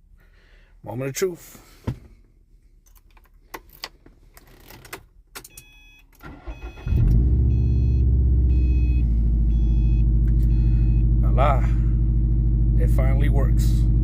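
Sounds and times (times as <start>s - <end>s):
car engine starting and idling: 6.2s - 14.0s.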